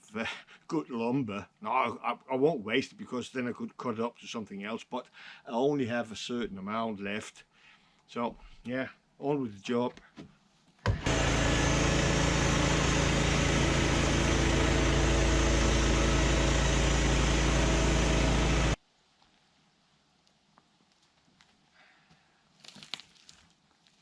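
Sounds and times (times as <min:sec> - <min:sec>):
sawmill petrol engine running: 0:10.9 - 0:18.8.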